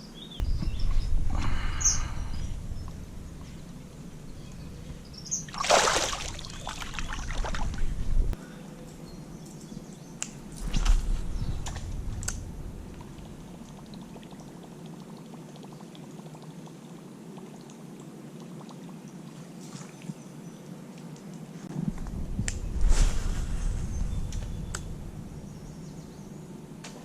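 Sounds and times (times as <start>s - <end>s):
water splashing and dripping: 5.5s - 8.0s.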